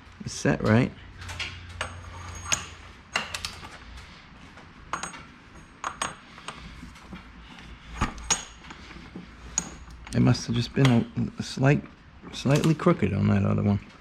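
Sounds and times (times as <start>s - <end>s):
metal wrench clinking on nut: 4.9s - 6.6s, 8.2s - 8.6s.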